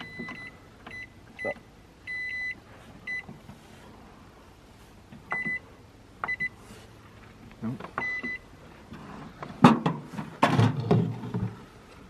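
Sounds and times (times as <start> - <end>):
microwave keypad beeps: 0.0 - 3.2, 5.3 - 5.6, 6.3 - 6.5, 8.0 - 8.4.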